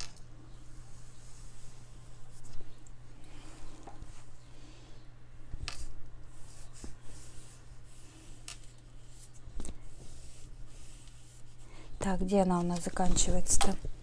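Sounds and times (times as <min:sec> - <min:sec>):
faint steady hum: 0:00.0 - 0:14.0
brush strokes on paper: 0:06.3 - 0:11.6.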